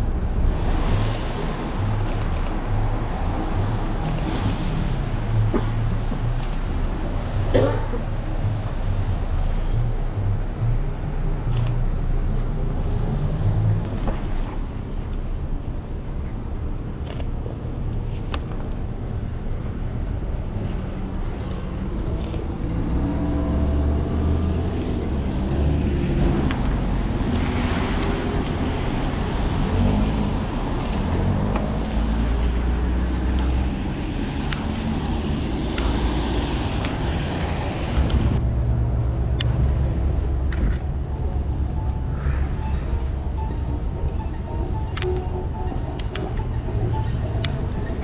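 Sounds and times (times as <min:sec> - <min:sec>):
car engines passing: 0:00.0 - 0:48.0.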